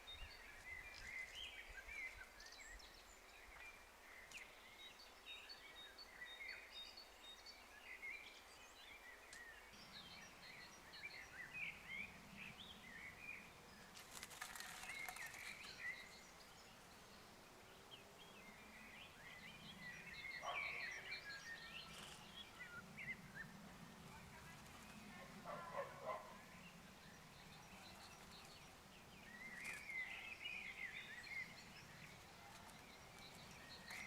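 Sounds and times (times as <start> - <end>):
songbirds chirping: 0.0 - 34.0
rustling: 13.9 - 15.8, 32.0 - 34.0.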